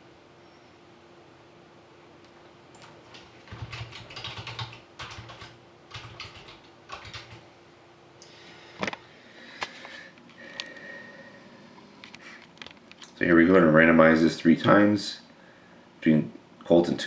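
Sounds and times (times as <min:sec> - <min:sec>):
typing on computer keyboard: 0:02.7 - 0:07.4.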